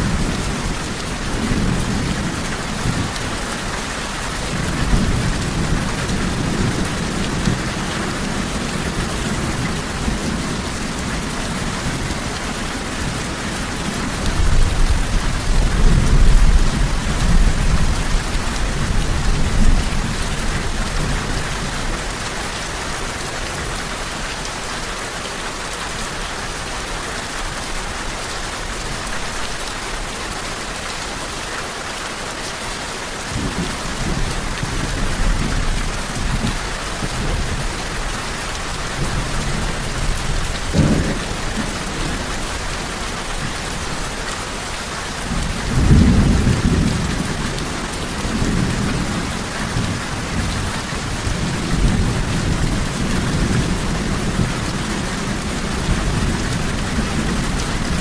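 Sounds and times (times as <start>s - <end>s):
heavy rain hissing: 0.0s - 58.0s
low thunder rumbling: 39.0s - 43.8s, 45.3s - 58.0s.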